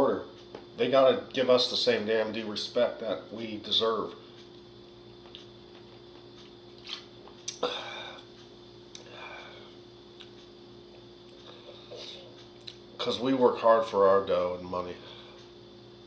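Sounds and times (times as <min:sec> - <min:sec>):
low electrical hum: 0:00.0 - 0:16.0.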